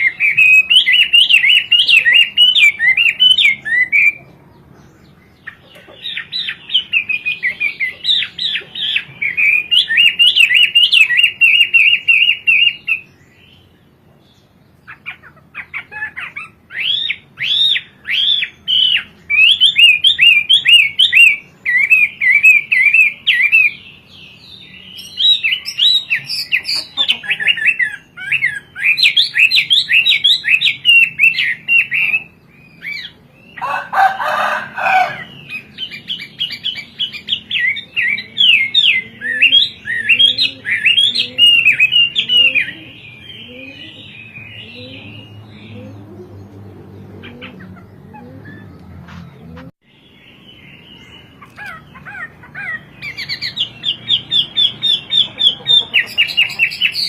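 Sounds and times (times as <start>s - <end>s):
bird singing whistled notes: 0.0s - 4.3s, 6.1s - 13.7s, 16.0s - 33.6s, 35.4s - 46.4s.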